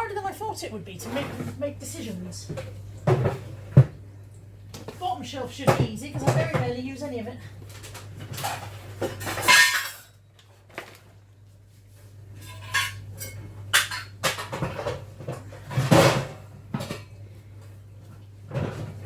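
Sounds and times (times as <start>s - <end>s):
low steady hum: 0.0s - 19.0s
metal baking tins clattering: 8.4s - 10.1s.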